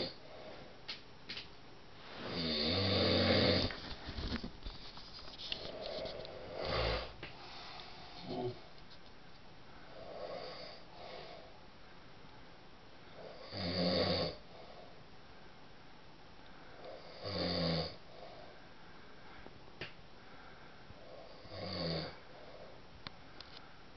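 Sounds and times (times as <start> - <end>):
quiet breaths: 0.0 - 0.9, 3.2 - 13.6, 14.3 - 23.9
man snoring: 2.3 - 3.7, 6.4 - 7.2, 10.1 - 11.2, 13.2 - 14.4, 17.0 - 18.0, 21.2 - 22.2.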